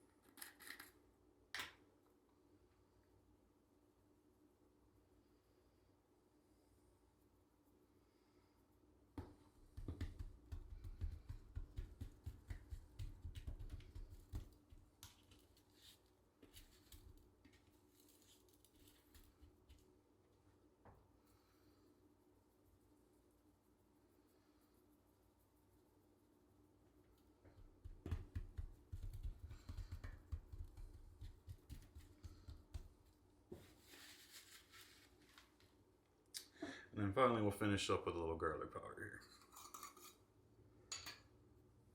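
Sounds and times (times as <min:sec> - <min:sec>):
hands patting meat: 0:09.2 - 0:15.7, 0:27.4 - 0:33.3
soft rustling: 0:09.7 - 0:20.0, 0:27.1 - 0:35.9.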